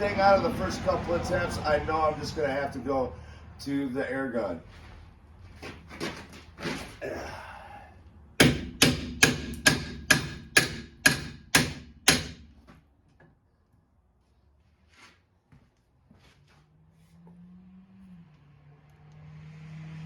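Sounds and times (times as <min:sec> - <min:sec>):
hammer striking metal hub: 0:08.4 - 0:12.5.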